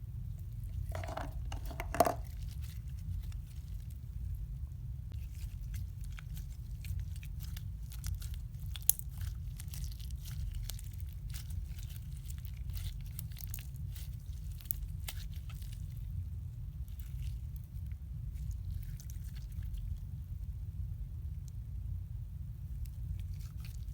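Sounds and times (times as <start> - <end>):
slime crackling and popping: 5.1 - 16.1.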